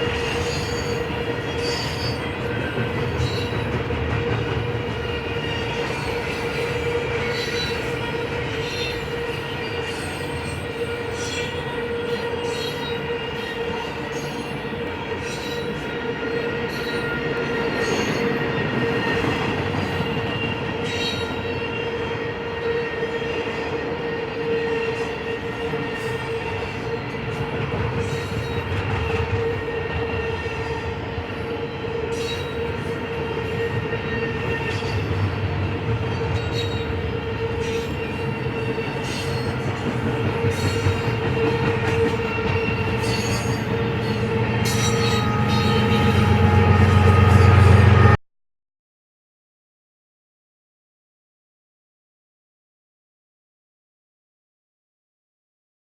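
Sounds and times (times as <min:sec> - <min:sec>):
train rumble: 0:00.0 - 0:48.2
wheel squeal: 0:36.1 - 0:48.1.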